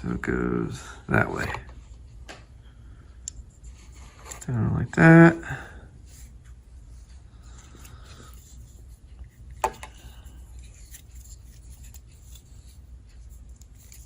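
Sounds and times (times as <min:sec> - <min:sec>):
multi-tool rubbing and clicking: 0:07.5 - 0:14.0.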